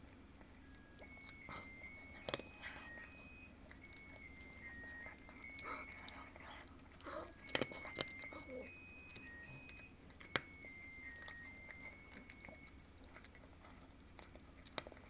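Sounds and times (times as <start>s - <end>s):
faint high-pitched tones: 0.0s - 15.0s
clicks and clinks at food dish: 12.1s - 15.0s.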